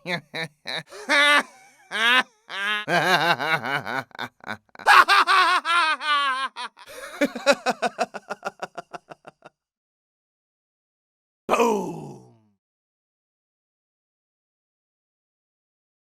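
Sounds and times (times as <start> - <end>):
person laughing: 0.0 - 9.5.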